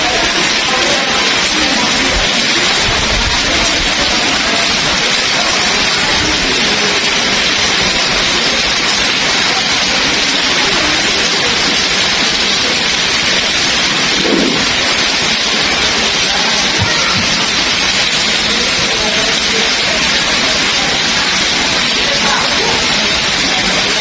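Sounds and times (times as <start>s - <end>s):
heavy rain pouring: 0.0s - 24.0s.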